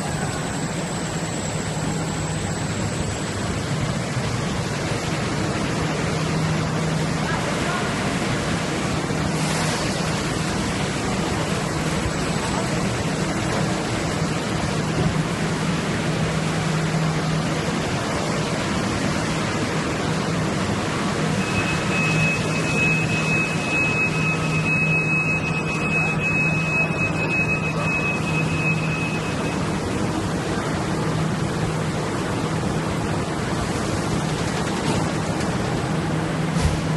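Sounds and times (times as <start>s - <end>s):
thin high whine: 0.0s - 7.9s, 21.3s - 31.2s
machinery hiss and low hum: 0.0s - 36.9s.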